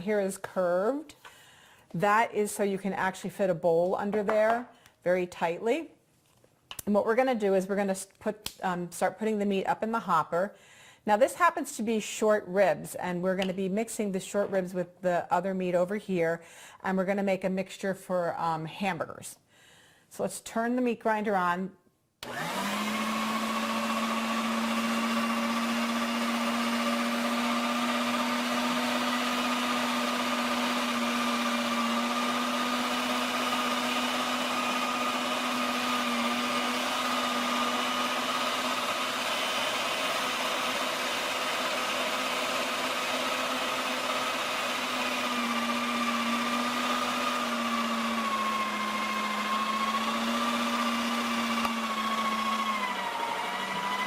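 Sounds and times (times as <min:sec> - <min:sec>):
electric meat grinder motor: 0:22.2 - 0:54.0.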